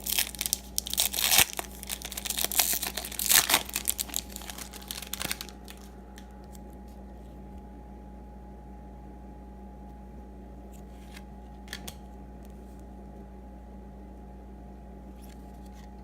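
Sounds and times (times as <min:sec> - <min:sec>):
wrapper tearing and crinkling: 0:00.0 - 0:06.6
low steady hum: 0:00.0 - 0:16.0.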